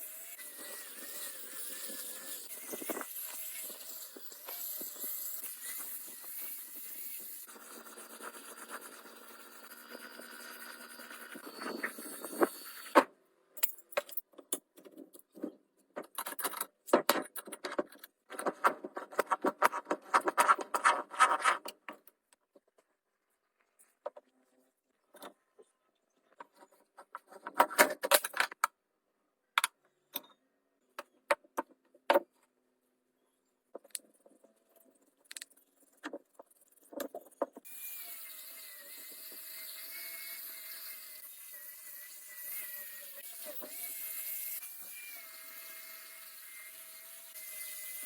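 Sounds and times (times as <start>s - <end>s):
small motor whirring: 0.0s - 13.0s.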